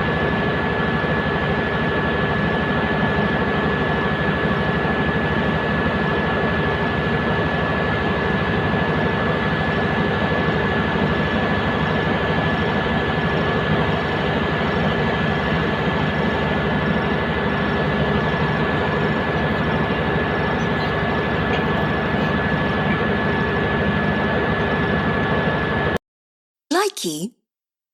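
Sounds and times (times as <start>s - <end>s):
bulldozer diesel engine running: 17.5s - 24.0s.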